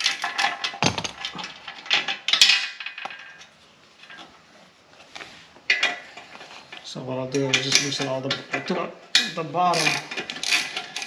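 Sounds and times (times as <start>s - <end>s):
metal tools clattering: 0.0s - 4.3s, 5.7s - 11.0s
ratchet wrench clicking: 9.7s - 11.0s.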